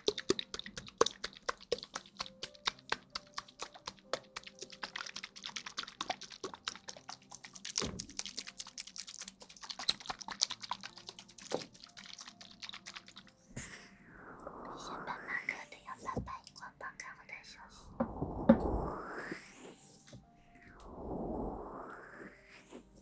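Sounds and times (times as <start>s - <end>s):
rapid clicking taps: 0.0s - 13.3s.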